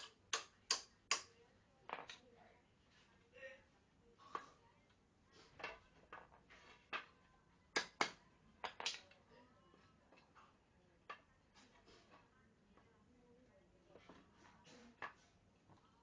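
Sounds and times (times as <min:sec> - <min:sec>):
small objects knocking and clicking: 0:01.9 - 0:02.2, 0:05.6 - 0:09.2.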